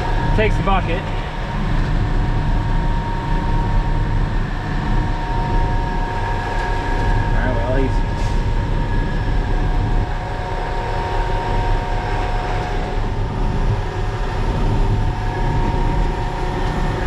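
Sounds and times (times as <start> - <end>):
truck diesel engine running: 9.4 - 17.0.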